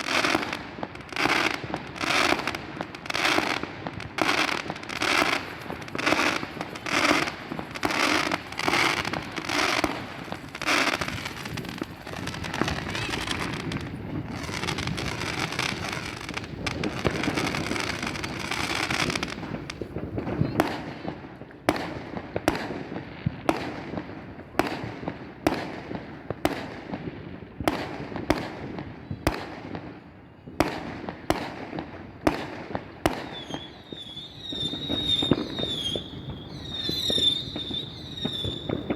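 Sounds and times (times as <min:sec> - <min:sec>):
whistling rockets: 0:00.0 - 0:22.8, 0:32.3 - 0:38.9
fireworks bangs and crackle: 0:00.0 - 0:38.9.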